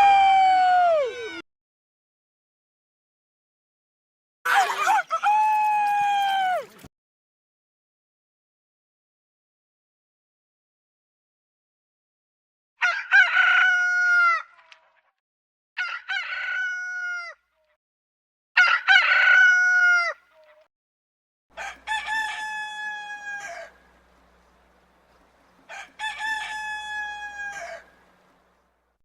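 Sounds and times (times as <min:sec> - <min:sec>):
rooster crowing: 0:12.8 - 0:14.5, 0:15.8 - 0:17.4, 0:18.6 - 0:20.2, 0:21.5 - 0:24.2, 0:25.6 - 0:28.2
faint low hum: 0:21.6 - 0:29.0.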